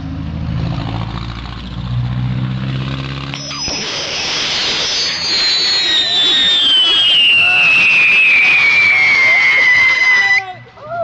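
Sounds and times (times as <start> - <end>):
car engine revving: 0.0 - 8.2
whistling firework: 3.3 - 11.0.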